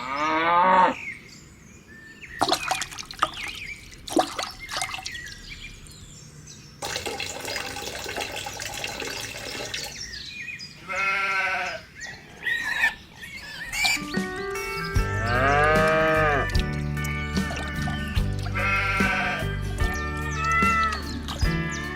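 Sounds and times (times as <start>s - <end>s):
farm animal bleating: 10.8s - 12.8s, 15.0s - 16.7s, 18.4s - 21.2s
background music: 13.9s - 21.9s.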